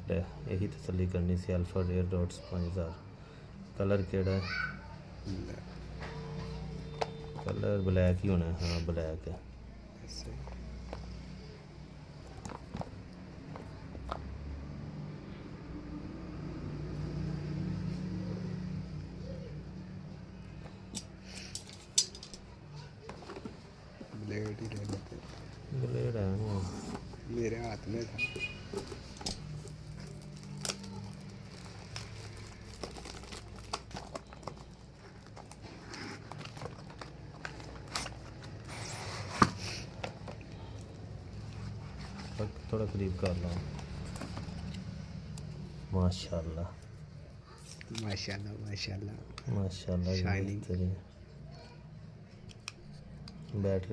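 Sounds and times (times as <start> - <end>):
plastic wrap crinkling and tearing: 24.2 - 25.9, 28.8 - 39.9.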